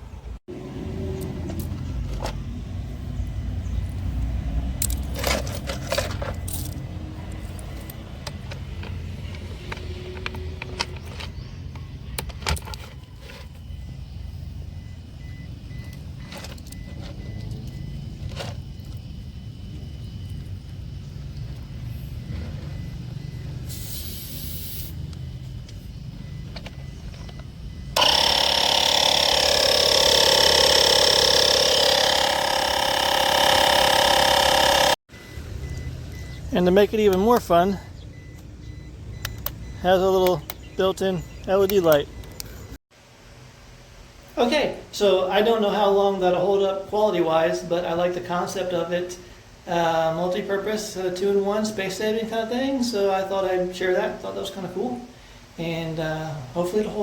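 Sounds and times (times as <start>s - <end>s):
low steady rumble: 0.0s - 23.9s, 24.9s - 28.3s
plastic parts clicking and rattling: 4.8s - 13.4s
air compressor pump whining: 4.8s - 36.4s.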